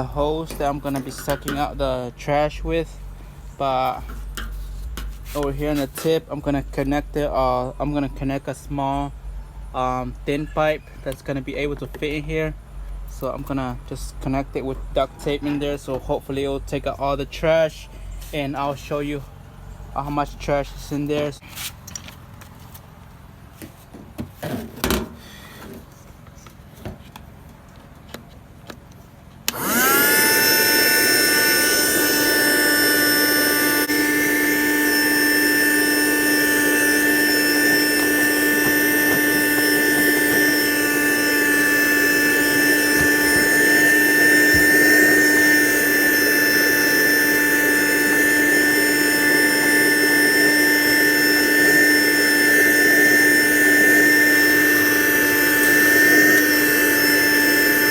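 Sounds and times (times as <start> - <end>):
vacuum cleaner whining: 0.0 - 4.3, 29.5 - 57.9.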